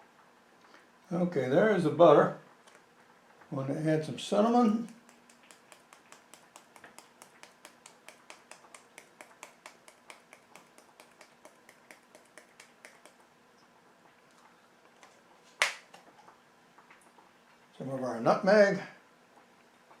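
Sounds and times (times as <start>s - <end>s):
spice container tapping: 4.8s - 13.2s, 15.6s - 15.9s
sharp knock: 15.6s - 15.8s.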